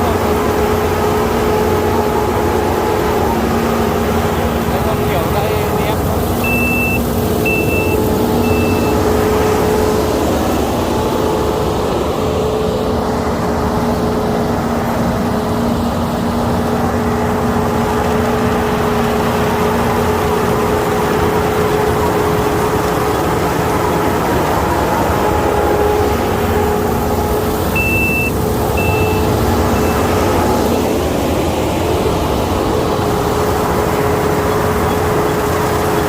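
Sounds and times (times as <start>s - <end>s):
combine harvester drone: 0.0s - 36.0s
short high beeps: 6.4s - 9.0s, 27.7s - 30.1s.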